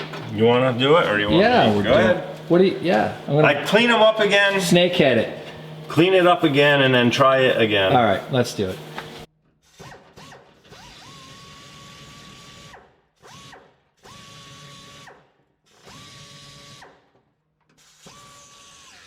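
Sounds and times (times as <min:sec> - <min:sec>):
grinder whining on metal: 0:17.8 - 0:19.0.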